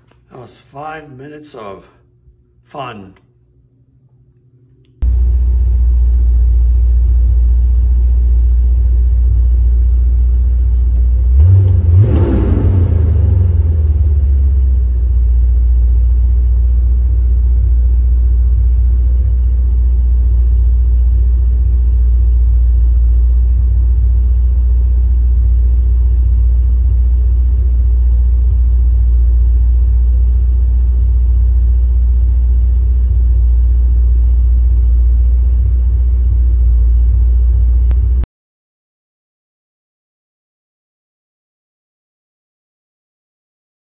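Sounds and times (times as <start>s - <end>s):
car engine idling: 5.0s - 38.2s
engine revving: 6.6s - 38.2s.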